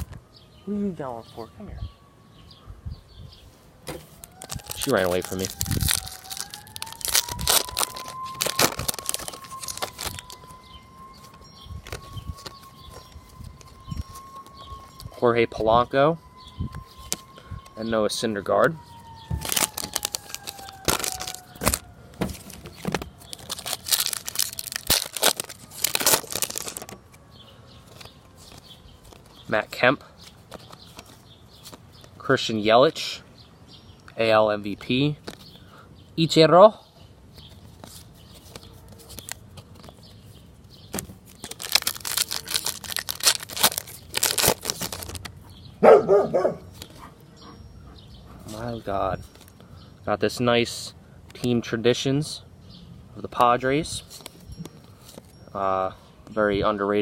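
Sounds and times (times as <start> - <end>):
card wrapper crinkling and tearing: 4.1 - 15.1, 18.9 - 27.2, 37.8 - 40.1, 40.9 - 45.4
dog barking: 45.8 - 47.2.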